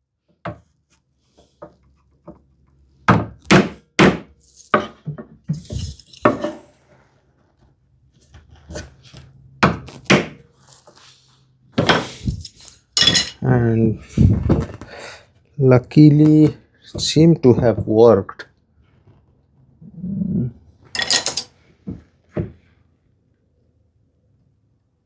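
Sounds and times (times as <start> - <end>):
sharp wooden thunks: 3.1 - 5.6, 9.6 - 10.4.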